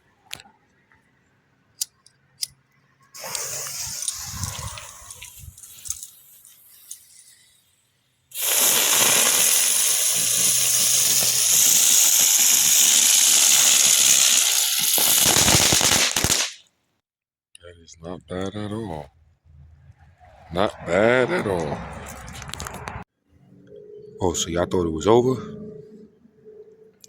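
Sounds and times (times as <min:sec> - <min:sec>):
firework crackling pops: 0:03.2 - 0:06.8, 0:08.3 - 0:16.6
firework hissing: 0:03.2 - 0:07.4, 0:08.3 - 0:16.6.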